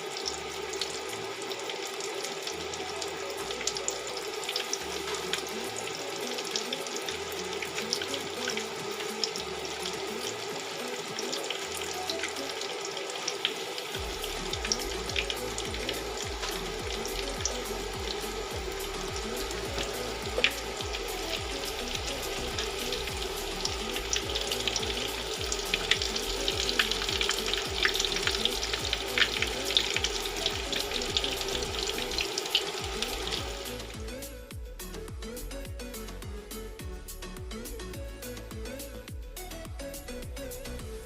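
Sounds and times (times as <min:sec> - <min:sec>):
background music with bass: 0:00.0 - 0:12.9, 0:14.0 - 0:41.0
food sizzling in hot oil: 0:00.0 - 0:35.0.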